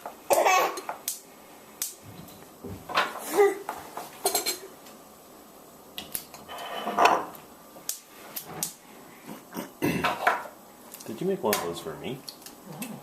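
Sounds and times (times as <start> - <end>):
dishes and utensils clattering: 4.2 - 4.7, 6.4 - 7.4, 10.0 - 10.5.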